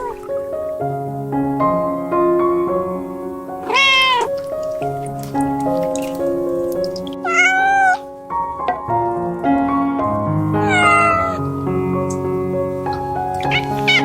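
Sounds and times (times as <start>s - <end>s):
cat meowing: 0.0s - 0.3s, 3.6s - 4.9s, 7.2s - 8.1s, 10.6s - 11.6s, 13.4s - 14.0s
background music: 0.0s - 14.0s.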